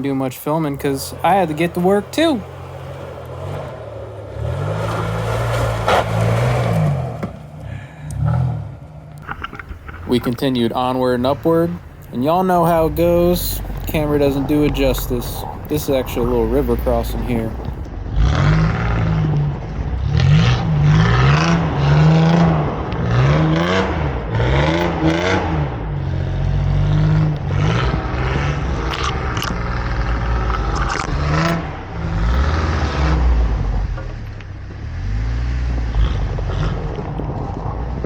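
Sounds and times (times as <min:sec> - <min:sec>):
truck engine revving: 0:00.0 - 0:38.0
scraping and clattering: 0:09.1 - 0:10.5.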